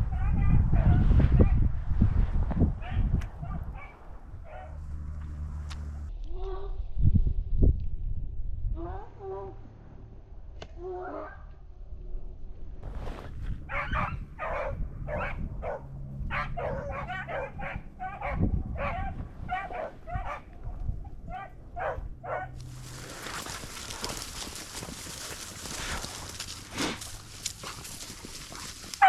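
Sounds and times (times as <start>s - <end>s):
wind rumble on microphone: 0.0s - 29.0s
hounds baying: 2.8s - 4.9s, 13.6s - 29.0s.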